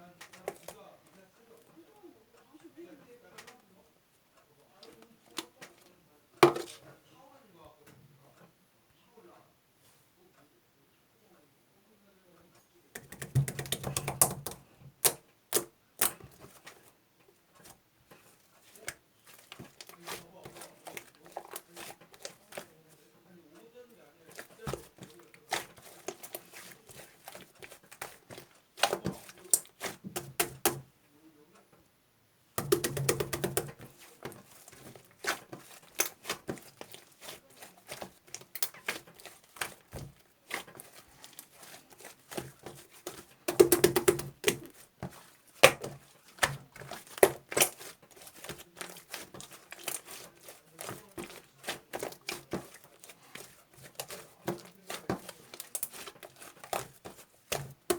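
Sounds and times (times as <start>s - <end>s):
crinkling: 13.0s - 30.9s, 32.6s - 57.9s.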